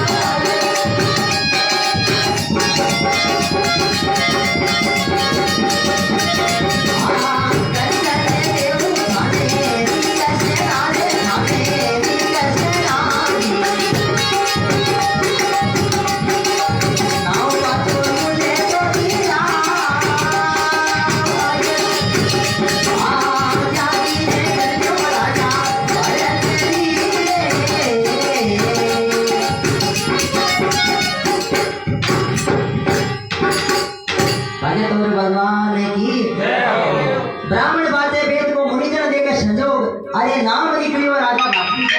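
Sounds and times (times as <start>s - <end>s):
held melody: 0.0s - 34.9s, 41.4s - 41.9s
dholak drum fast rhythm: 0.0s - 35.3s
held melodic notes: 41.4s - 41.9s.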